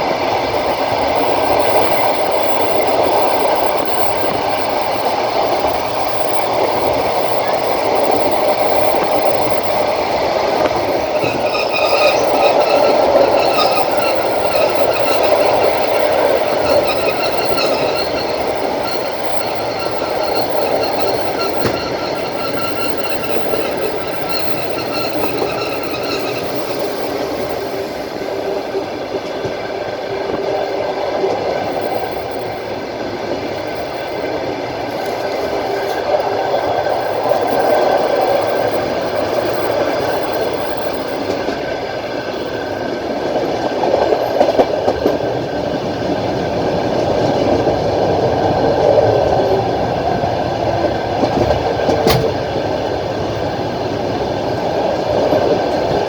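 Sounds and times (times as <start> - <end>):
train wheels rumbling on rails: 0.0 - 56.0
thin high ringing tones: 6.5 - 29.1.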